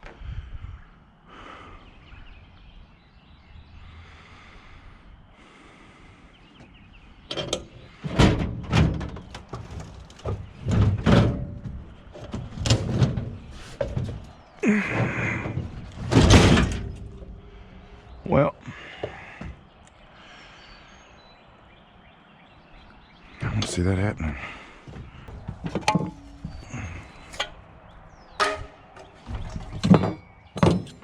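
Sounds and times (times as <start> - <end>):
scrap metal thunks and bangs: 7.3 - 18.3, 24.9 - 31.0.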